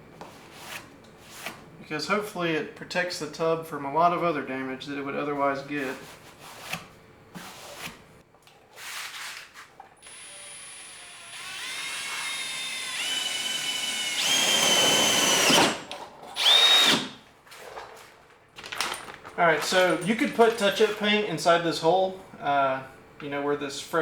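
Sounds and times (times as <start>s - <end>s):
power drill whine: 10.0s - 17.2s.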